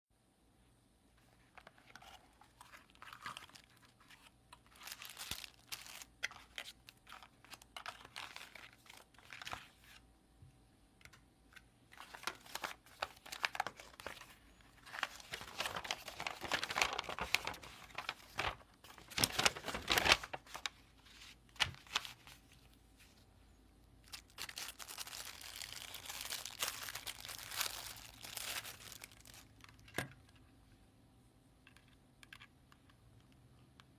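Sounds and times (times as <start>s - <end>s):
packaging crinkling and tearing: 1.6s - 10.0s, 12.0s - 20.8s, 21.6s - 22.4s, 24.0s - 29.9s.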